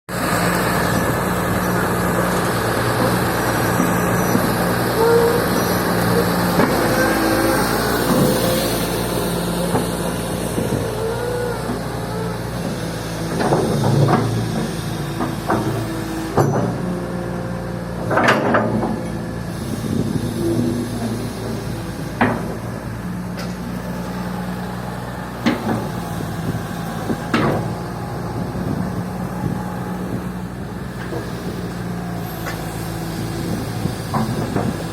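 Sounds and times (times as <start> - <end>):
excavator diesel engine running: 0.1 - 34.9
short whines: 4.2 - 12.6.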